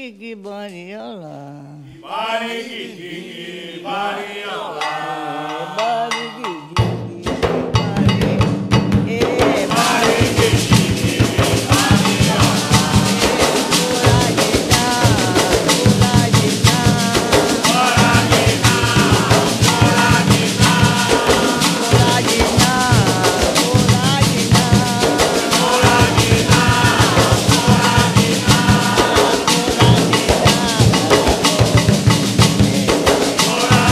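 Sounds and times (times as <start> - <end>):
voices singing: 0.0 - 33.9
drums and percussion: 3.9 - 33.9.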